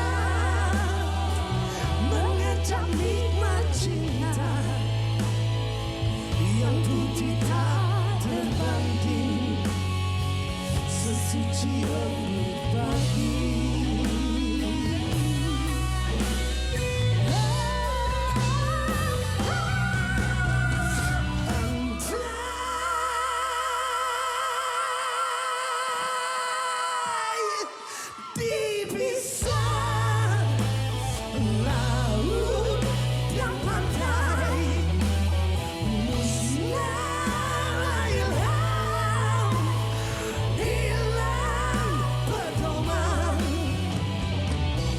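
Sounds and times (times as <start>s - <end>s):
bass and drums: 0.0s - 23.2s, 29.4s - 44.9s
electric guitar: 0.0s - 24.4s, 29.4s - 44.9s
person singing: 0.0s - 44.3s
live pop-rock band: 0.0s - 44.9s.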